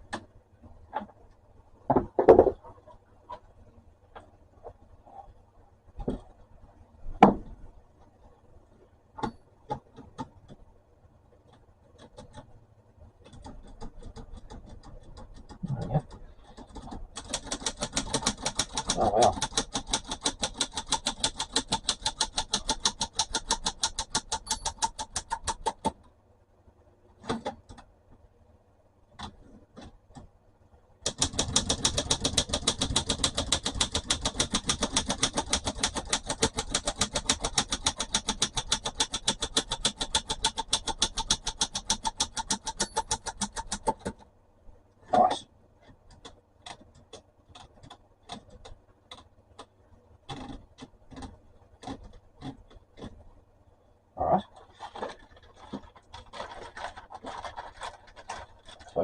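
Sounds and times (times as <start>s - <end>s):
typewriter carriage ratcheting clicks: 13.3s - 25.9s, 31.0s - 44.1s
loud typewriter clack: 16.7s - 25.8s, 31.0s - 44.0s.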